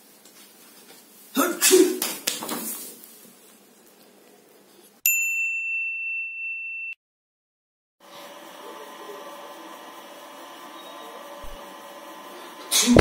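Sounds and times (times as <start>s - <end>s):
bell-like ding: 5.1s - 7.0s.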